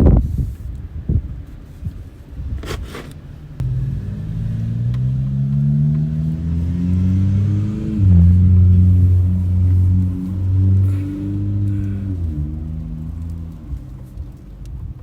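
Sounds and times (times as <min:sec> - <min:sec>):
handling scrapes: 0:01.4 - 0:03.2
motorcycle engine running: 0:03.6 - 0:14.1.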